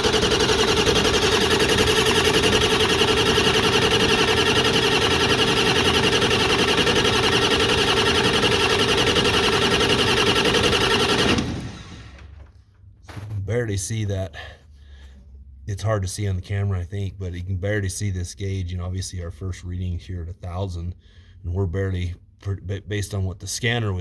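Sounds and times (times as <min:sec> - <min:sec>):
diesel engine cranking: 0:00.0 - 0:12.5.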